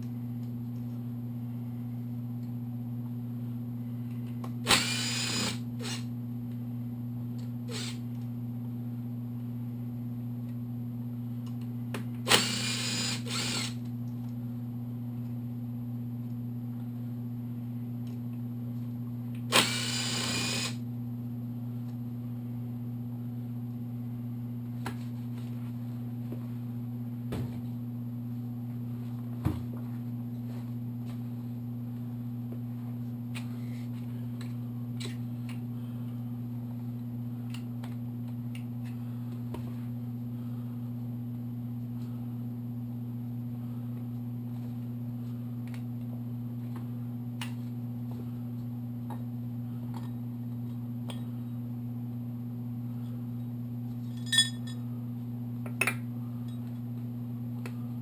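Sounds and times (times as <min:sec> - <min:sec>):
steady low hum: 0:00.0 - 0:58.0
metal part ringing: 0:54.2 - 0:54.7
metal tools clicking and clinking: 0:54.2 - 0:54.7.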